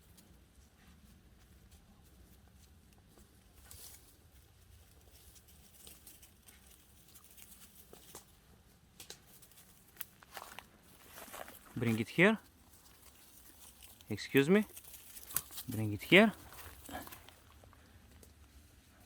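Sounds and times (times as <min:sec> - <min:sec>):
rustling leaf litter: 0:09.3 - 0:17.8.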